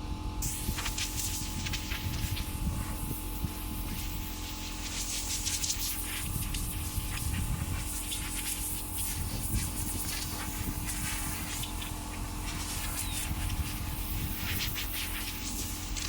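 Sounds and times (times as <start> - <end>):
low mechanical hum: 0.0 - 16.0.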